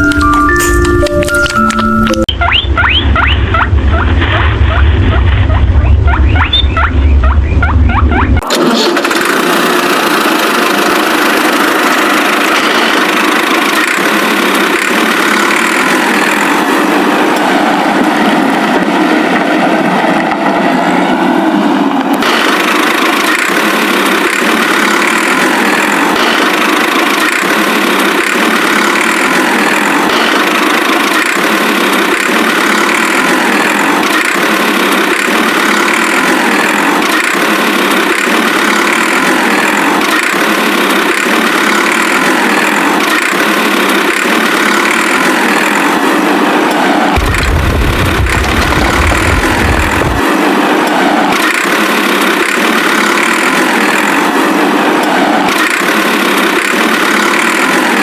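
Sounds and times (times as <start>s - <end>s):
deeper sound: 0.0s - 8.5s, 47.2s - 50.7s
small motor running: 8.4s - 17.4s, 22.2s - 46.3s, 47.2s - 58.0s.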